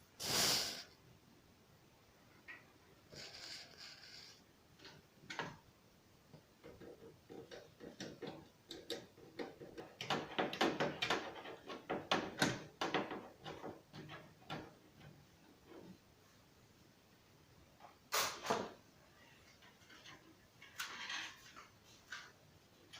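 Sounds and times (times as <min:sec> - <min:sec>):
computer parts clicking and knocking: 0:06.6 - 0:15.9.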